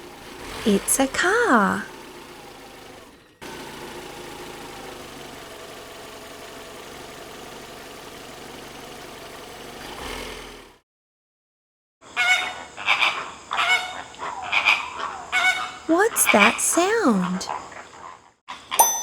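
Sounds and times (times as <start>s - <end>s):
car engine idling: 0.0s - 10.8s.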